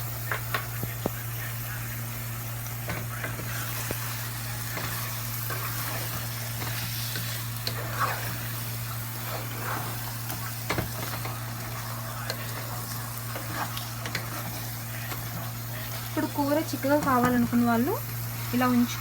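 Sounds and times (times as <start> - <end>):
curry sizzling in a pan: 0.0 - 19.0
steady low hum: 0.0 - 19.0
spoon scraping a pan: 2.8 - 17.6.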